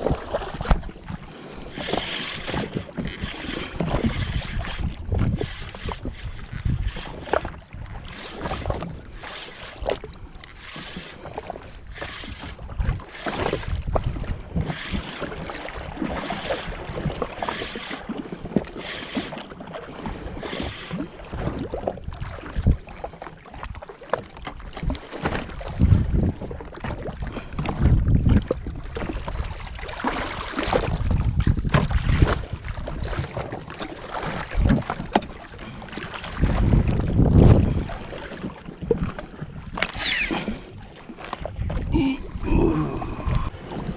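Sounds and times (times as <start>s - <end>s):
water splashing and slapping: 0.0s - 43.9s
wind buffeting microphone: 2.4s - 9.2s, 11.2s - 15.1s, 24.6s - 38.2s, 38.8s - 43.9s.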